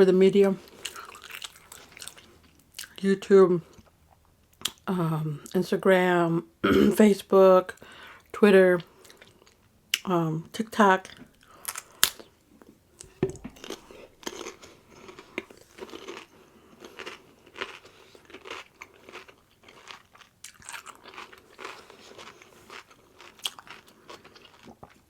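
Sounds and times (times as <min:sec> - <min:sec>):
crunchy chewing: 0:00.7 - 0:03.0, 0:13.0 - 0:25.0.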